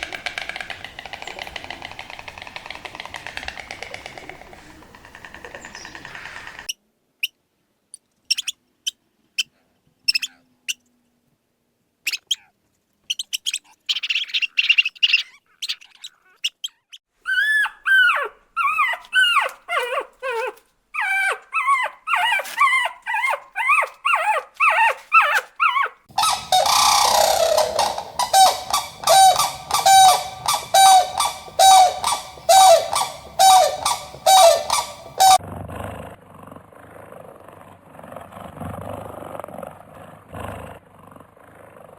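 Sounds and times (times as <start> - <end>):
animal clicks: 0.0 - 6.7
animal cries falling in pitch: 26.2 - 35.4.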